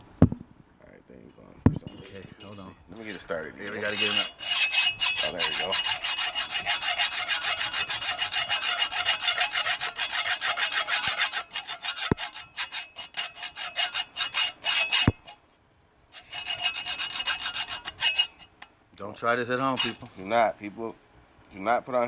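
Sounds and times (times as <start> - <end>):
hacksaw sawing through steel: 1.9 - 15.4, 16.2 - 18.6, 19.6 - 20.1.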